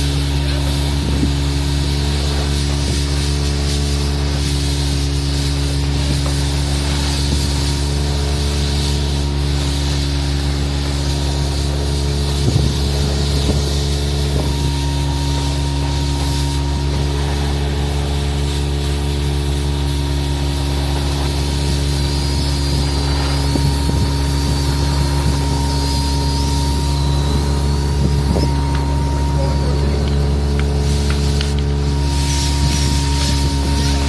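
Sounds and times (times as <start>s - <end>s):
vacuum excavator engine drone: 0.0s - 34.0s.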